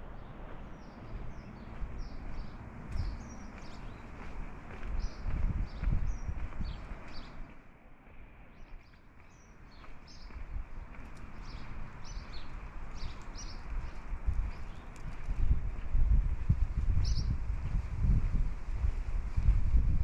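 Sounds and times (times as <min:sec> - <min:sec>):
wind buffeting microphone: 0:00.0 - 0:07.6, 0:08.5 - 0:20.0
small birds chirping: 0:00.0 - 0:16.0, 0:16.9 - 0:17.4.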